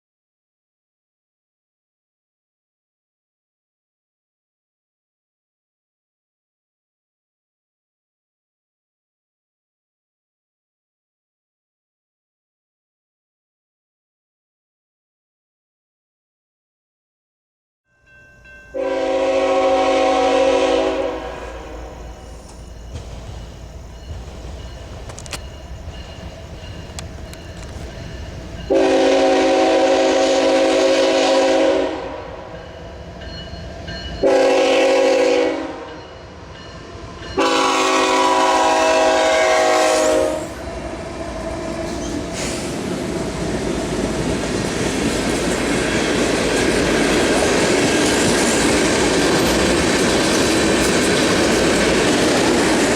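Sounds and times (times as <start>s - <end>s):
low rumble of train: 17.9s - 52.9s
locomotive air horn blasts: 18.7s - 22.2s, 28.7s - 32.5s, 34.2s - 36.0s, 37.4s - 40.6s.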